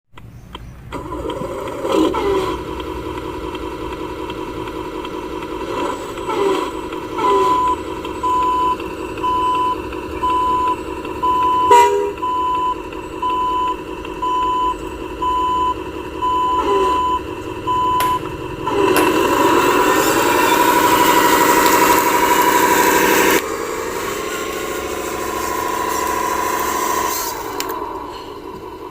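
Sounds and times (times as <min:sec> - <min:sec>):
toy truck engine hum: 0:00.2 - 0:28.9
reversing beeper: 0:05.2 - 0:28.6.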